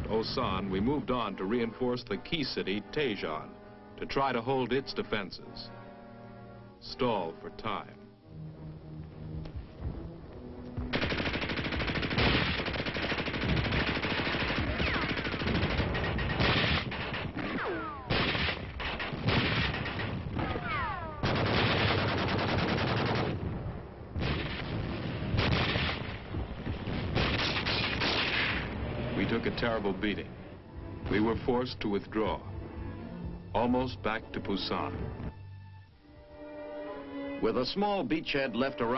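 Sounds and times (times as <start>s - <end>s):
machine-gun and rifle fire: 10.9s - 23.5s, 24.2s - 26.2s, 26.9s - 28.6s.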